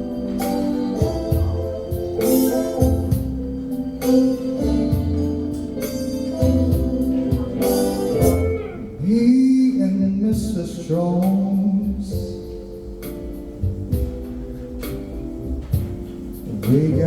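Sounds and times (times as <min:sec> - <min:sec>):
instrumental backing: 0:00.0 - 0:17.0
person singing long notes: 0:04.0 - 0:12.5.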